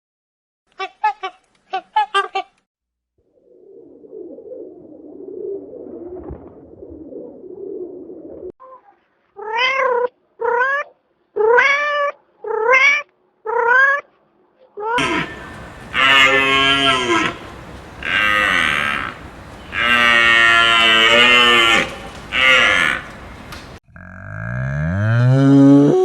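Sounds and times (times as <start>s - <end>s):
loud animal call: 15.0s - 24.5s.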